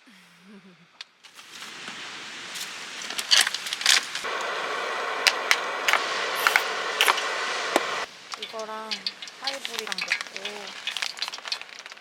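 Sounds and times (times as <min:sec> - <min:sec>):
food sizzling in fat: 0:01.3 - 0:12.0
fat popping and crackling: 0:02.6 - 0:12.0.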